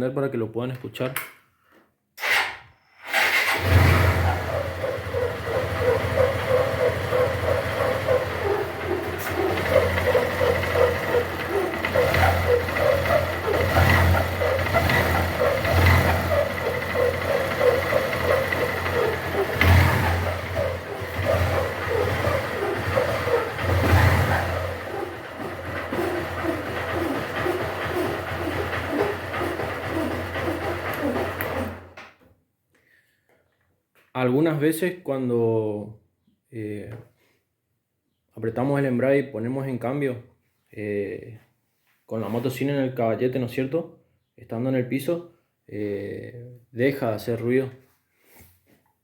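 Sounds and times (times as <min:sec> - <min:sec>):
motorcycle engine revving: 0:03.0 - 0:32.0
loud rubbing hum: 0:04.2 - 0:31.8.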